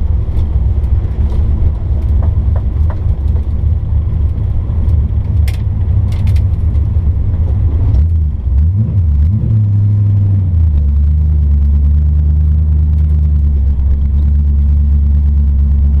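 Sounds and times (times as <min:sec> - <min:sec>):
hot rod engine revving: 0:07.8 - 0:16.0.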